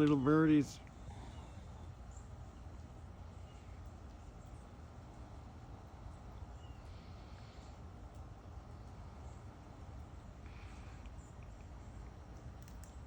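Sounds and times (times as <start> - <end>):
faint bird chirps: 1.0 - 4.8, 6.1 - 7.8.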